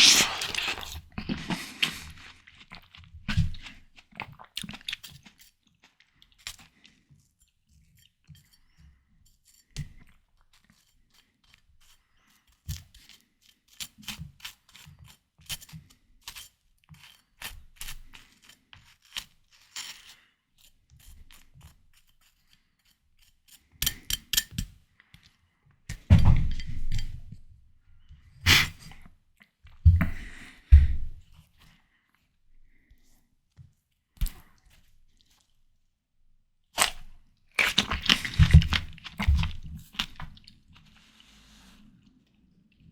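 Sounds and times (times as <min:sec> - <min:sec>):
wet bites and chews: 0:00.0 - 0:06.2, 0:36.8 - 0:40.7
crunchy watermelon chewing: 0:00.0 - 0:07.0, 0:36.8 - 0:42.3.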